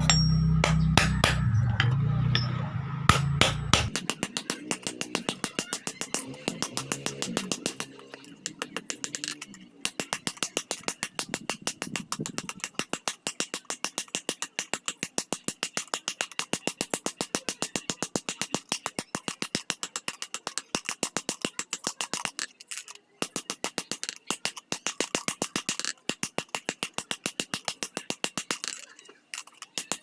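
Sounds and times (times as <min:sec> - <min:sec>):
high metallic ringing: 0:00.0 - 0:09.6.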